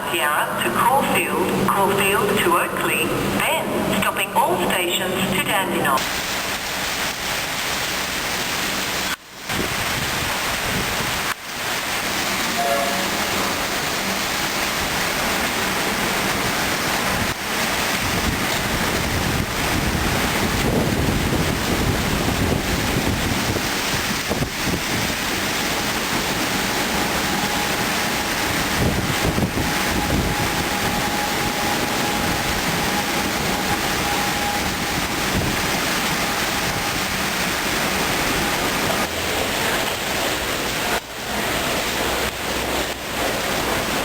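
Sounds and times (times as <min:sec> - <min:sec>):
electric train rumbling: 0:00.0 - 0:44.0
wind noise on microphone: 0:09.5 - 0:11.4, 0:16.4 - 0:37.8.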